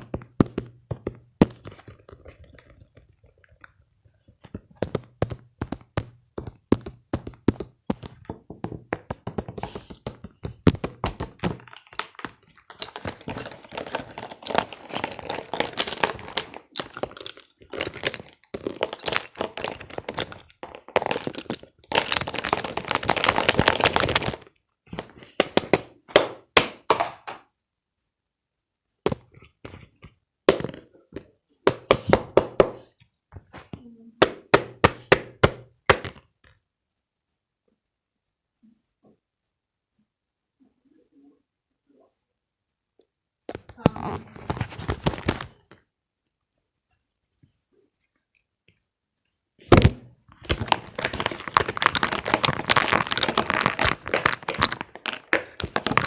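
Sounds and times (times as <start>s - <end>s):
sharp knocks and cracks: 0.0s - 3.7s, 4.3s - 27.4s, 29.0s - 36.3s, 49.7s - 56.0s
dense crackling: 49.6s - 56.0s.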